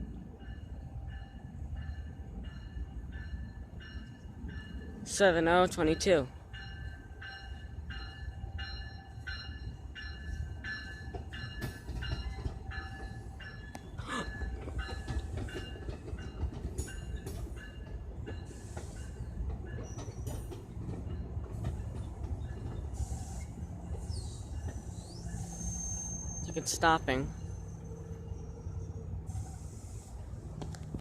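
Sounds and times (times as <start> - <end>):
passenger train rumbling past: 0.0 - 31.0.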